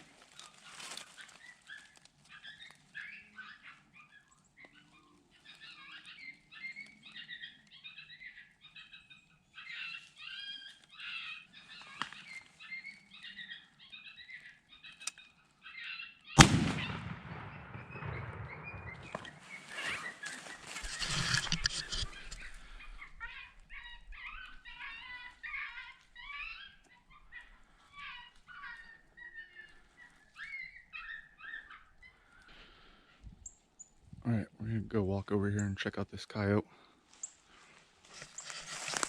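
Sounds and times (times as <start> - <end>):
shotgun blast with echo: 16.4 - 20.2
high yipping animal calls: 17.8 - 32.4.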